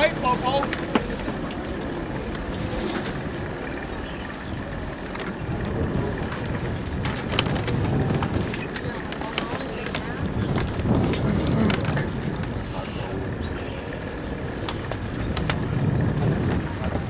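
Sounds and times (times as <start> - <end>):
water around a rowing boat: 0.0 - 17.0
wind: 0.0 - 17.0.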